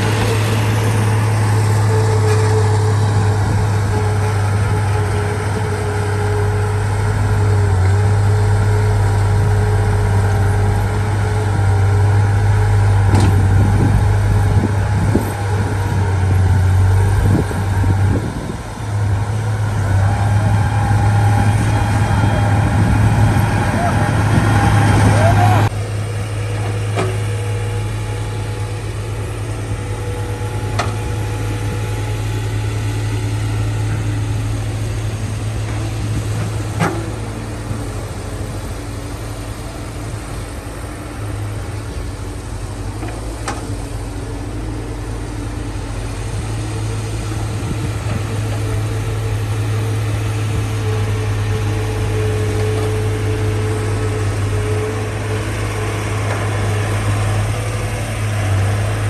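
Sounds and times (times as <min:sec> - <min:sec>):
heavy diesel engine humming: 0:00.0 - 0:59.0.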